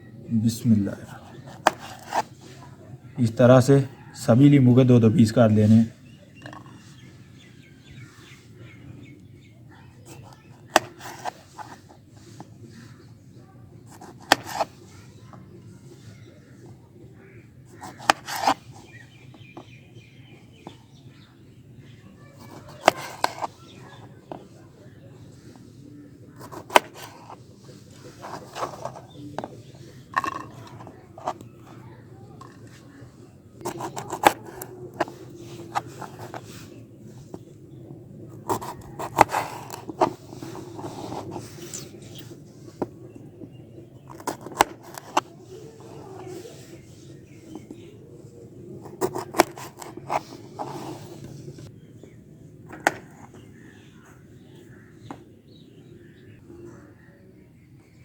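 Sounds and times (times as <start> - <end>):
knife cutting lemons: 10.2 - 11.8, 14.0 - 14.7, 17.8 - 18.7, 22.4 - 23.6, 26.4 - 27.4, 33.6 - 36.5, 44.1 - 46.6, 48.8 - 51.4.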